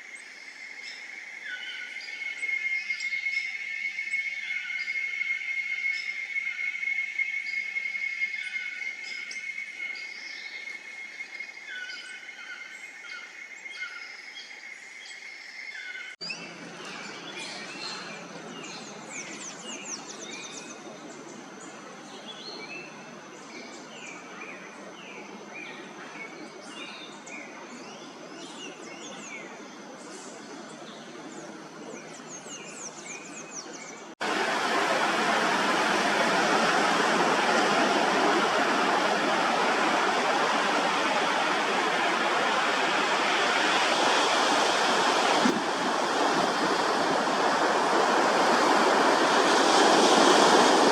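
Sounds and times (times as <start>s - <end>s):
rushing water: 34.1s - 50.9s
steady hiss: 34.2s - 50.9s.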